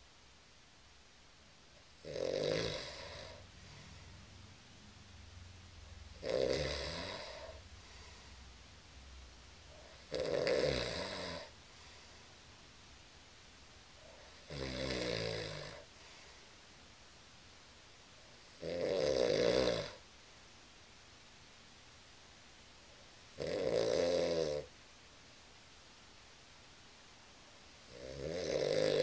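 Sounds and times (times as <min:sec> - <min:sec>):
person snoring: 0:02.0 - 0:03.8, 0:06.2 - 0:08.3, 0:09.7 - 0:11.5, 0:14.1 - 0:15.9, 0:18.5 - 0:20.0, 0:23.4 - 0:24.7, 0:27.9 - 0:29.0.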